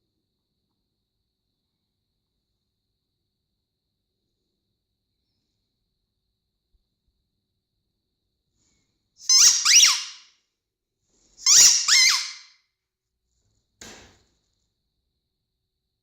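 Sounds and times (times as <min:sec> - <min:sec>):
dog toy squeaker: 0:09.2 - 0:10.3, 0:11.4 - 0:12.5.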